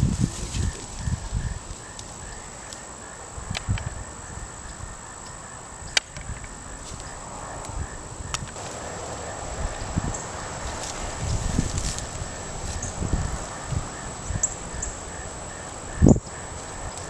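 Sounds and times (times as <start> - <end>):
faint insect chirp: 0.0 - 17.0
high-pitched insect buzz: 0.0 - 17.0
low rumble: 7.1 - 17.0.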